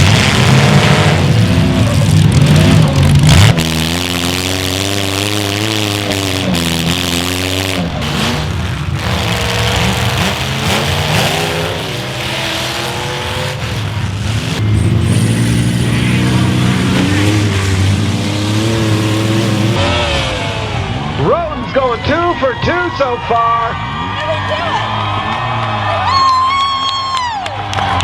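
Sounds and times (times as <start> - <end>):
cars ramming each other: 0.0 - 21.2
car engines revving hard: 0.0 - 21.3.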